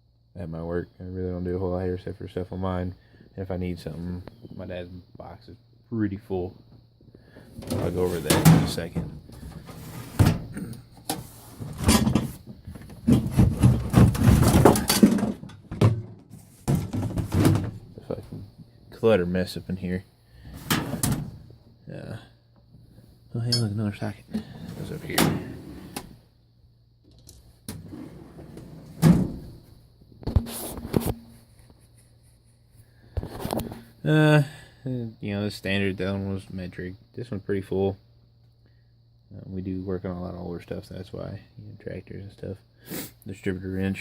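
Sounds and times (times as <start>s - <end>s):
tools knocking and rattling: 11.1s - 17.8s.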